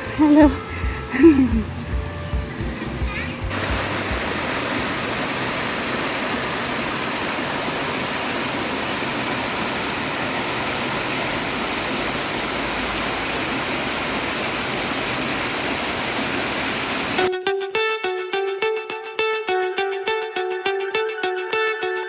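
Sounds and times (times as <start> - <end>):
plucked guitar music: 0.0 - 5.1, 17.2 - 22.0
waterfall rushing: 2.7 - 17.3.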